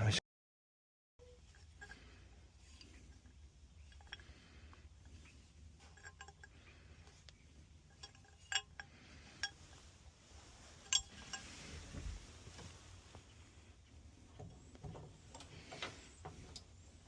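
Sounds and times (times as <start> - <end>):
metal tools clinking: 1.2 - 13.0.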